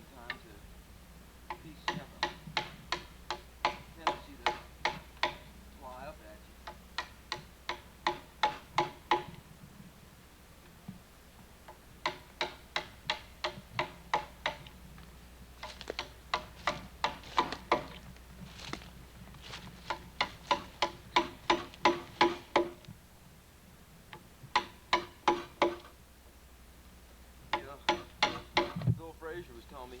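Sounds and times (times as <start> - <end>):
hammer striking chisel into log: 1.5 - 5.5, 6.6 - 9.4, 11.7 - 14.7, 15.6 - 18.0, 19.8 - 22.8, 24.5 - 26.0, 27.5 - 28.9.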